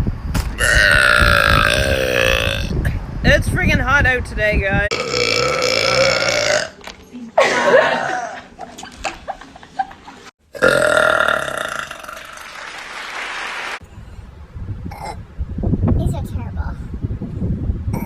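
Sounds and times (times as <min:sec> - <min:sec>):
girl burping: 0:00.6 - 0:02.7, 0:04.9 - 0:06.8, 0:10.6 - 0:12.4, 0:14.9 - 0:15.2.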